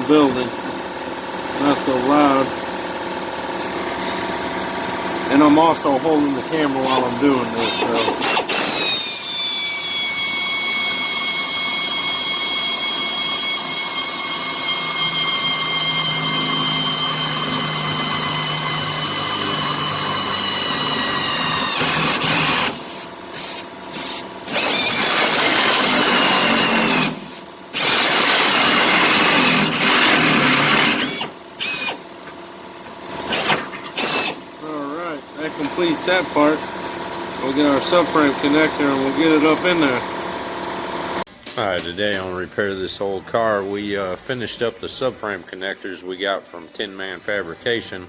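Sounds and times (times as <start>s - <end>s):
drill cutting sheet metal: 3.7s - 32.2s, 33.1s - 40.2s.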